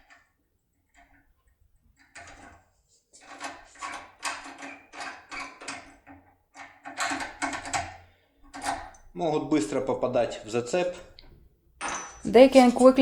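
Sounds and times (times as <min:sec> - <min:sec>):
lock pick scraping and clicking: 0:02.0 - 0:02.6, 0:03.2 - 0:09.0.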